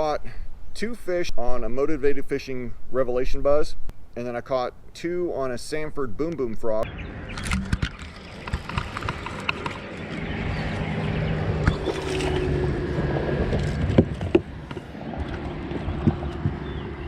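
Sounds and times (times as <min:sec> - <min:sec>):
boat motor running: 0:07.4 - 0:17.0.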